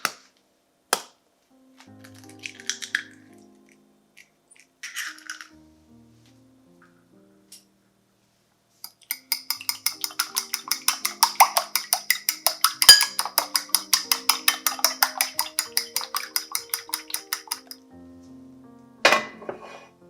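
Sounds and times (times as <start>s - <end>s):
background music: 1.5s - 20.0s
kitchen utensil tapping: 8.9s - 17.8s, 19.1s - 19.9s.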